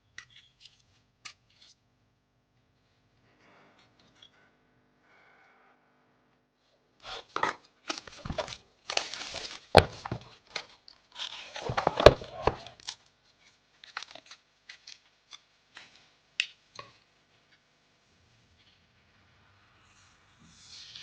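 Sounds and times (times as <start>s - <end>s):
packaging rustling and tearing: 7.0s - 13.0s, 13.8s - 15.0s.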